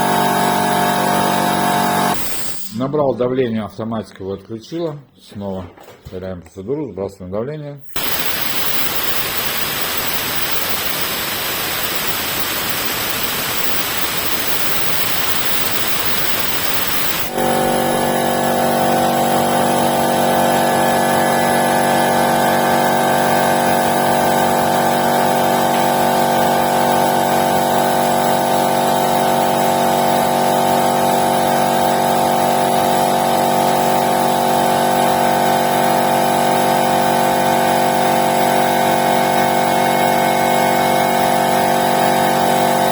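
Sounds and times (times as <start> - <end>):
piston compressor running: 0.0 - 2.8, 8.0 - 42.9
compressed air hissing: 8.0 - 19.0.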